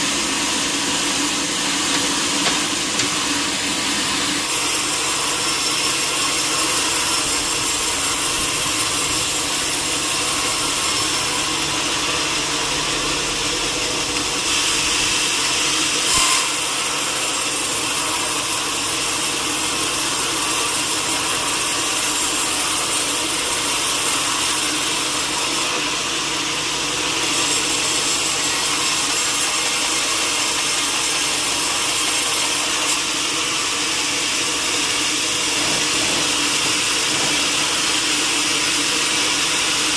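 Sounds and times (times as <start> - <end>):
machine hum: 0.0 - 5.5
saw grinding through wood: 0.0 - 39.9.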